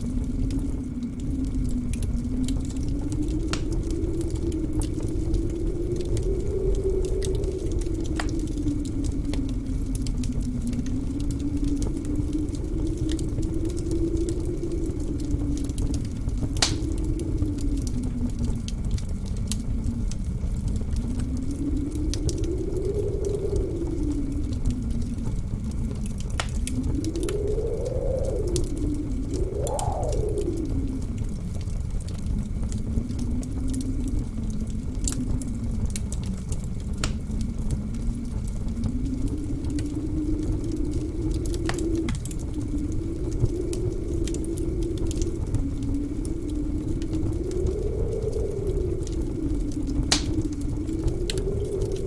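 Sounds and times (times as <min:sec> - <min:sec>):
blizzard wind howling: 0:00.0 - 0:52.0
fire popping: 0:00.0 - 0:52.0
steady low rumble: 0:00.0 - 0:52.0
wood fire crackling: 0:00.0 - 0:52.0.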